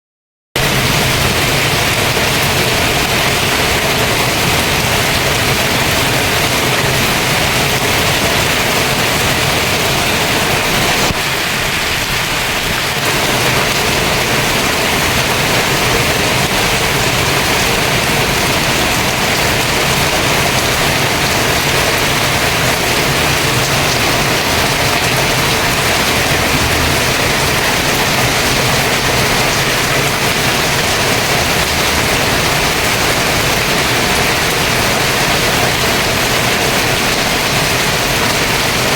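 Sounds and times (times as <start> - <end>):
heavy rain pouring: 0.6 - 38.9.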